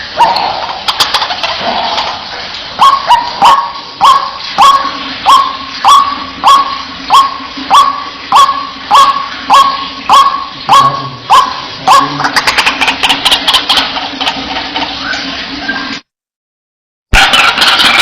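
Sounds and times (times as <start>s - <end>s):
bird calling bark-like notes: 2.8s - 13.8s.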